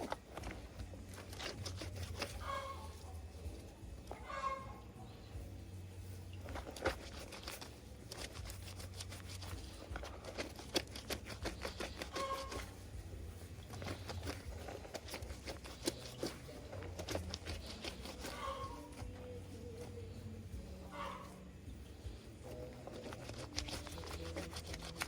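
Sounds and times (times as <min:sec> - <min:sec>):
rustling and crinkling handling: 0:00.0 - 0:25.0
small irregular clicks and taps: 0:06.5 - 0:12.8, 0:22.1 - 0:25.0.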